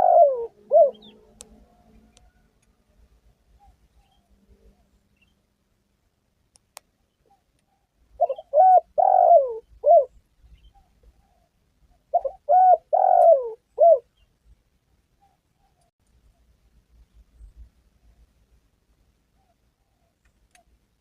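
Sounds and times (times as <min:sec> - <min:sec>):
dove cooing: 0:00.0 - 0:02.4, 0:07.3 - 0:14.1.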